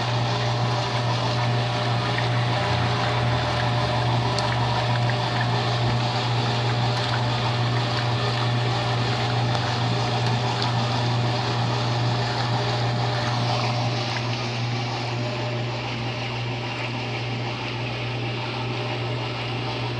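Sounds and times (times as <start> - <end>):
water sloshing: 0.0 - 15.5
washing machine motor hum: 0.0 - 19.9.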